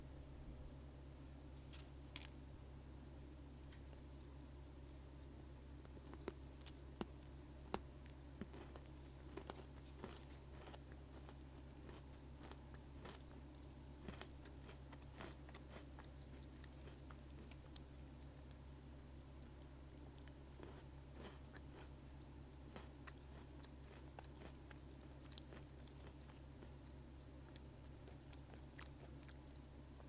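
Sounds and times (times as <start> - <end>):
steady low hum: 0.0 - 30.0
chewing crackles: 3.6 - 30.0
biscuit sticks crunching: 5.6 - 18.6, 19.4 - 22.0, 22.6 - 29.7.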